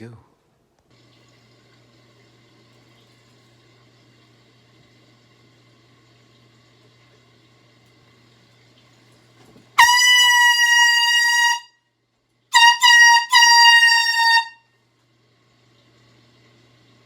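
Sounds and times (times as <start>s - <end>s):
air horn blasts: 9.8s - 11.8s, 12.5s - 14.7s.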